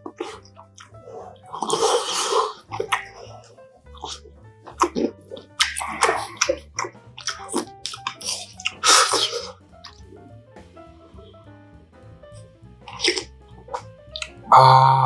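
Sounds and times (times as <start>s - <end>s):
wet slurping of broth: 0.0s - 3.4s, 4.0s - 10.1s
chewing: 0.0s - 10.3s, 12.8s - 14.4s
quiet background music: 0.0s - 15.0s.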